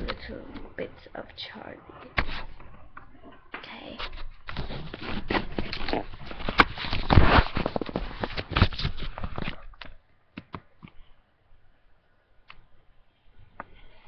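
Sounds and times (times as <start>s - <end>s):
rustling: 2.0s - 9.7s.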